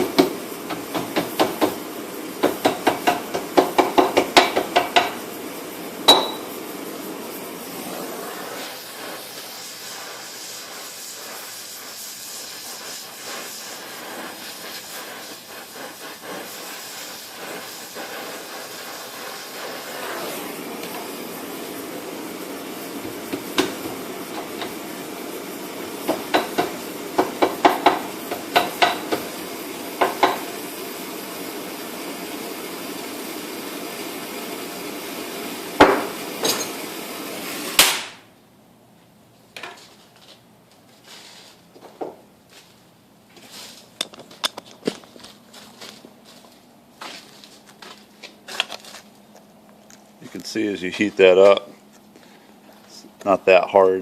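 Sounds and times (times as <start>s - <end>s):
gas torch hissing: 0.0s - 38.2s, 50.2s - 54.0s.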